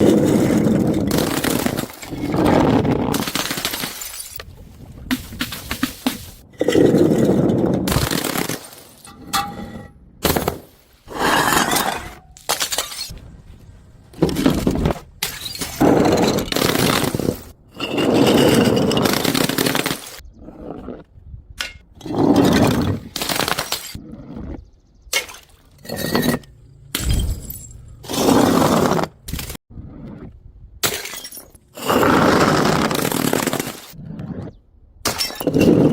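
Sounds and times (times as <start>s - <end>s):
glass bottles shattering: 3.2s - 4.4s, 12.5s - 13.1s, 25.2s - 27.9s, 30.8s - 31.6s.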